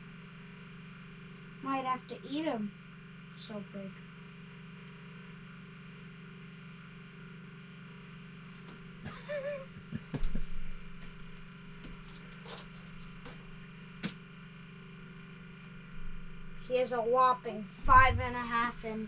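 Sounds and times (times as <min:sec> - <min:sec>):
steady low hum: 0:00.0 - 0:19.0
dull thump: 0:17.8 - 0:18.6.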